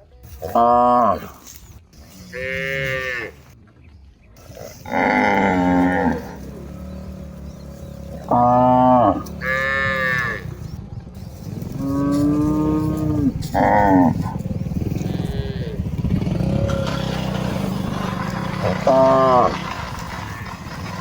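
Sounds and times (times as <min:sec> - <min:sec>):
cattle mooing: 0:02.0 - 0:03.4, 0:04.5 - 0:10.8, 0:11.7 - 0:20.6.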